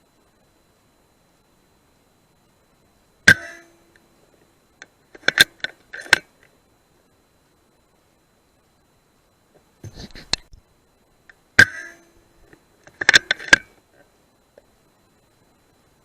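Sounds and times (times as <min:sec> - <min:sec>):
rifle shot: 0:03.3 - 0:03.7.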